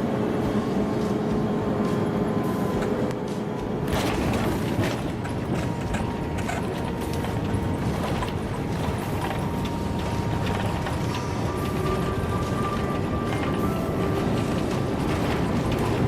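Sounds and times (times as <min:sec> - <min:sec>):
aircraft cabin rumble: 0:00.0 - 0:16.0.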